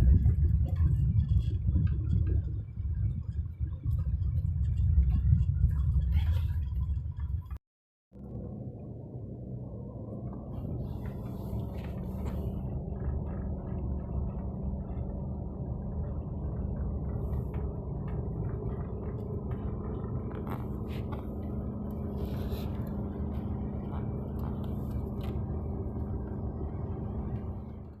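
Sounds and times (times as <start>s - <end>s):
car engine rumbling: 0.0s - 28.0s
road noise: 0.0s - 28.0s
light clicks and scrapes: 17.3s - 26.2s.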